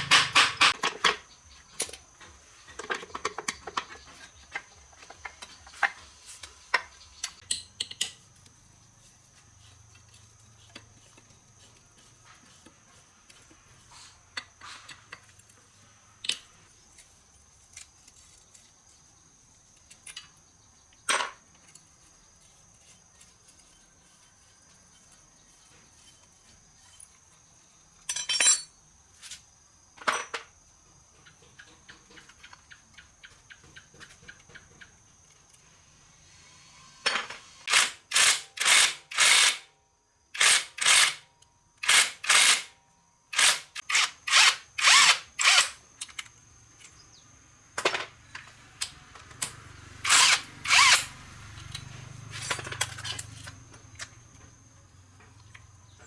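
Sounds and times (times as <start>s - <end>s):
tools and metal parts clicking: 0.0s - 2.1s, 2.7s - 8.2s, 28.0s - 28.8s, 43.4s - 47.0s, 47.8s - 54.2s.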